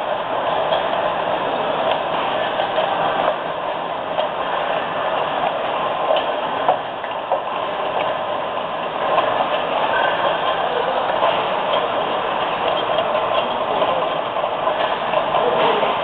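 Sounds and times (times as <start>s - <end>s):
machinery clattering: 0.0s - 16.0s
sharp clicks and ticks: 1.8s - 3.5s.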